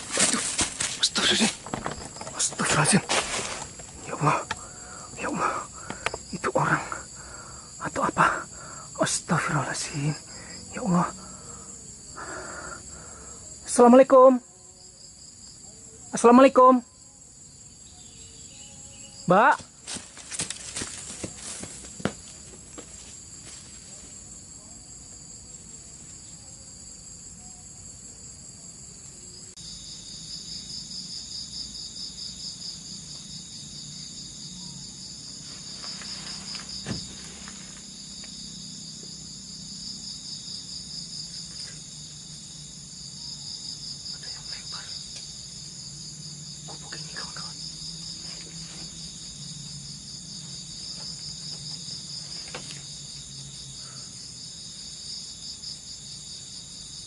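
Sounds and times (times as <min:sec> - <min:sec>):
soft knocks or rustles: 0:00.0 - 0:04.0, 0:35.6 - 0:37.8
insects trilling: 0:00.0 - 0:57.0.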